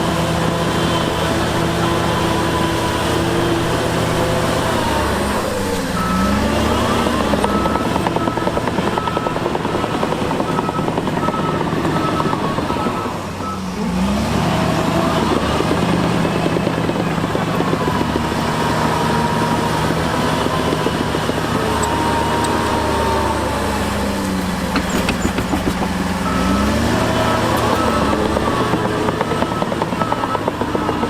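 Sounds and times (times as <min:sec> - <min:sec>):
heavy diesel machinery engine: 0:00.0 - 0:31.0
reversing alarm beeping: 0:04.9 - 0:19.7, 0:26.2 - 0:31.0.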